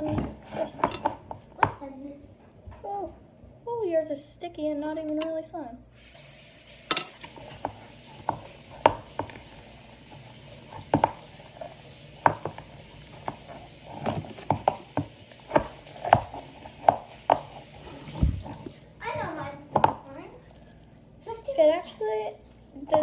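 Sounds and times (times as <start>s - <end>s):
slime squelching: 6.8s - 23.0s.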